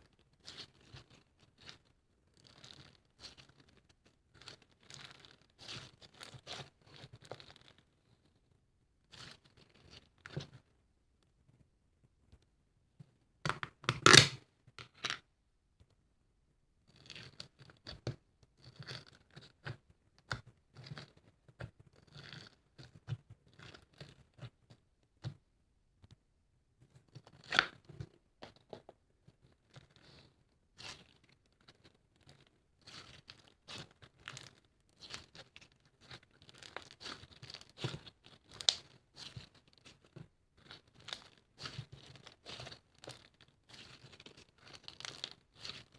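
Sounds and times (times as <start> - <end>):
crinkling and tearing handling noise: 29.7 - 45.9.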